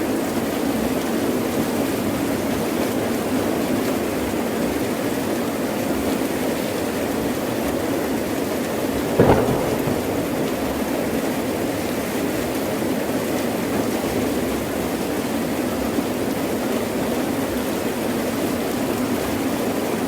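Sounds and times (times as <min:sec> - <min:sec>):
sharp crack of thunder: 0:09.2 - 0:11.5.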